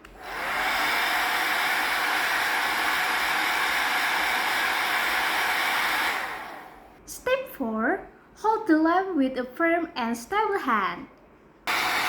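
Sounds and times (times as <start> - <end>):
hair dryer running: 0.0 - 7.0, 11.7 - 12.0.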